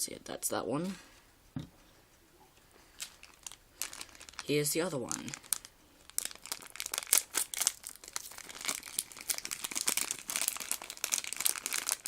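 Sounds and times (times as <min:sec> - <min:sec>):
plastic packet crinkling and tearing: 0:02.9 - 0:12.0.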